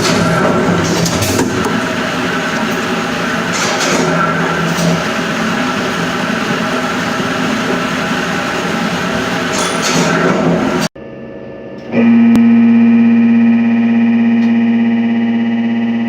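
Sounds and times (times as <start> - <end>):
heavy machinery running: 0.0 - 10.9.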